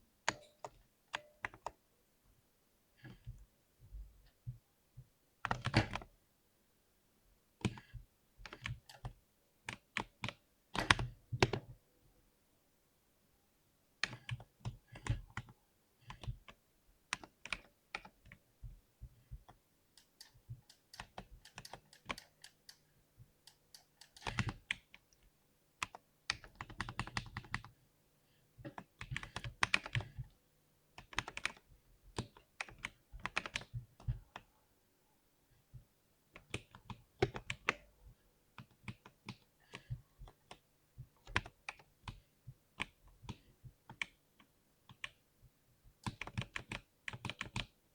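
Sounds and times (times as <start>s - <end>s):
keyboard keys clicking: 19.4s - 25.1s, 31.0s - 31.6s, 32.2s - 34.4s, 46.0s - 47.7s.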